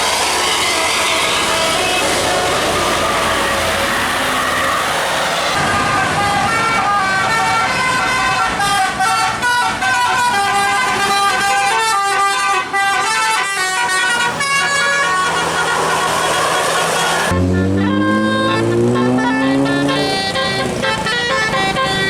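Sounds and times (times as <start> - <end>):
multi-tone bus horn tune: 0.0 - 22.0.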